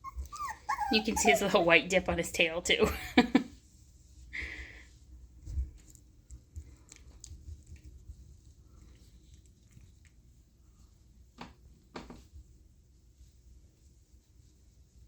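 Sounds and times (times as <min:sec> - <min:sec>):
puppies rustling and clicking: 0:00.0 - 0:02.8, 0:05.4 - 0:10.4.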